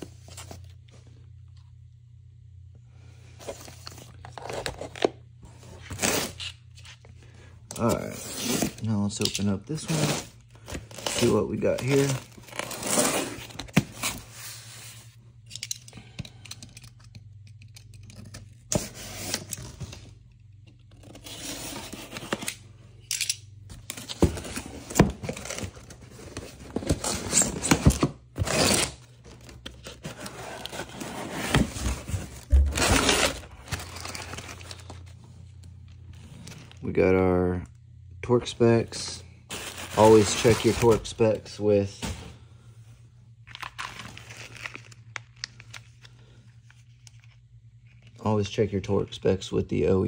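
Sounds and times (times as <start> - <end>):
cardboard tearing and rustling: 5.8 - 6.8, 9.8 - 15.0, 23.9 - 35.1, 39.5 - 41.2, 43.5 - 45.5.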